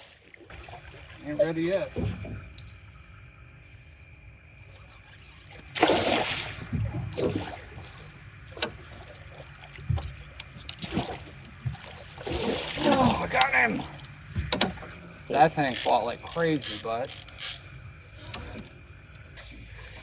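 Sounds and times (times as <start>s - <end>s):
water splashing and sloshing: 0.0s - 20.0s
fish thrashing at the surface: 5.3s - 13.7s.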